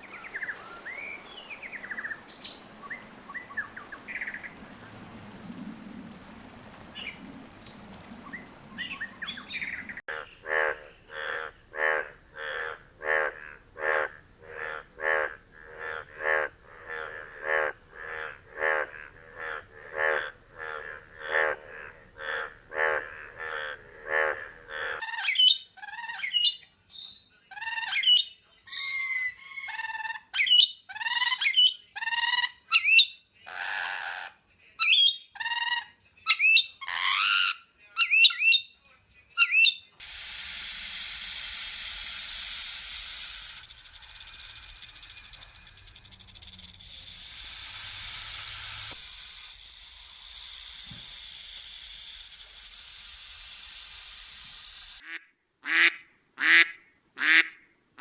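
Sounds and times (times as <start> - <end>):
steady hiss: 40.0 - 55.0.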